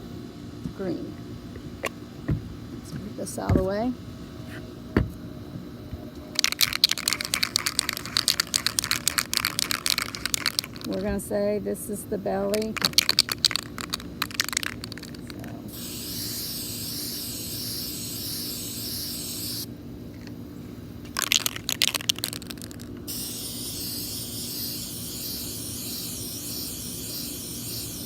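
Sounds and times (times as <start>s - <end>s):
spray can rattling: 6.4s - 11.3s, 12.5s - 19.6s, 21.1s - 28.0s
spray paint hissing: 6.4s - 11.3s, 12.3s - 19.7s, 21.1s - 28.0s.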